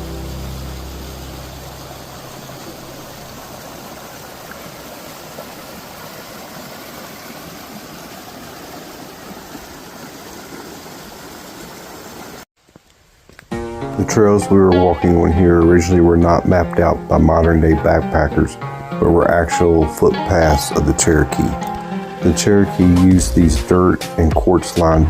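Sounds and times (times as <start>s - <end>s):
low music notes: 0.0s - 3.8s, 13.5s - 25.0s
water rushing over boulders: 0.0s - 12.5s.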